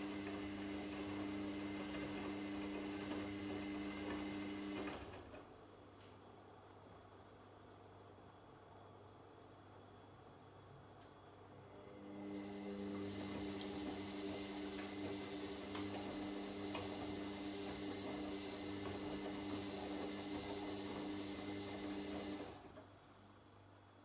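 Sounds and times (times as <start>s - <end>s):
washing machine humming: 0.0s - 5.9s, 11.4s - 23.7s.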